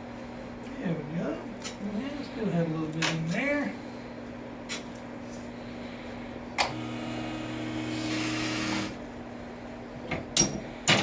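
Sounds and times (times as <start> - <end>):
low background hum: 0.0 - 11.0
small electric motor running: 6.6 - 9.0.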